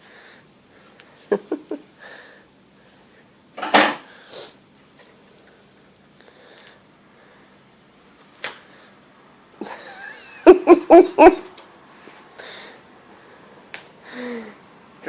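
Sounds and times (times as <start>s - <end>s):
woman laughing: 1.3s - 1.9s, 9.6s - 11.5s.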